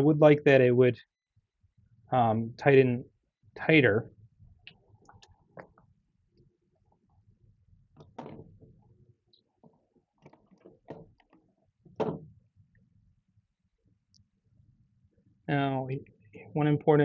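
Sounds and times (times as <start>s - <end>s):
plastic parts knocking and scraping: 9.6s - 12.3s.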